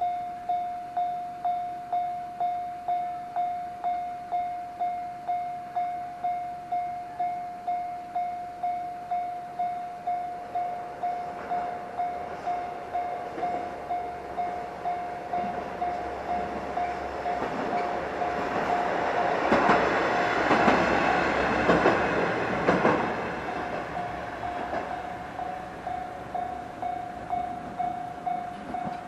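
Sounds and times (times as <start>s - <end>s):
level crossing warning bell: 0.0s - 29.0s
diesel railcar passing: 2.4s - 29.0s
wheel clacks over rail joints: 15.4s - 25.0s, 27.4s - 29.0s.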